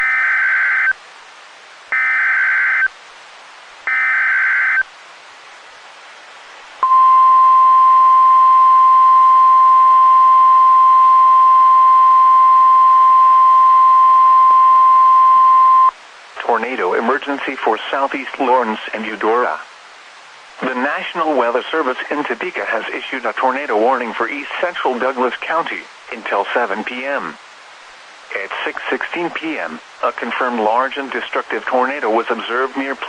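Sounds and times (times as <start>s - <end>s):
steady alarm tone: 1.9s - 2.9s.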